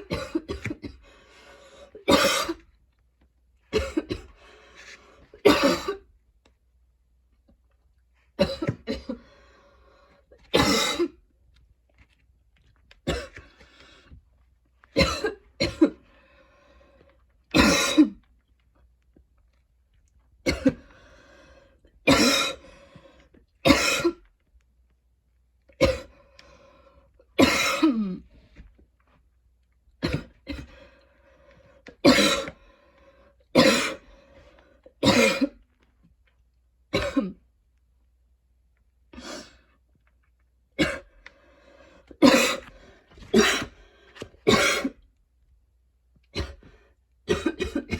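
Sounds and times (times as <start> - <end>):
woman coughing harshly: 0.0 - 1.0, 2.0 - 2.6, 3.7 - 4.3, 5.4 - 6.0, 8.4 - 9.2, 10.5 - 11.2, 15.0 - 16.0, 17.6 - 18.2, 20.5 - 20.8, 22.1 - 22.6, 23.6 - 24.2, 27.4 - 28.2, 30.0 - 30.7, 32.0 - 32.5, 33.6 - 34.0, 35.0 - 35.6, 36.9 - 37.4, 40.8 - 41.1, 42.2 - 42.7, 43.3 - 43.7, 44.5 - 45.0, 47.3 - 47.9.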